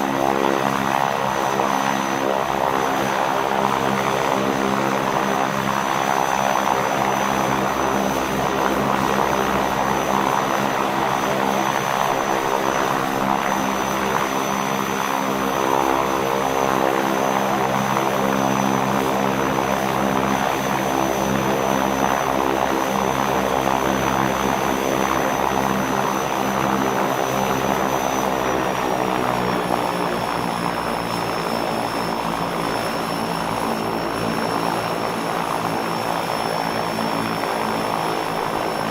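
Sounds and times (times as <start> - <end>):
propeller drone: 0.0 - 38.9.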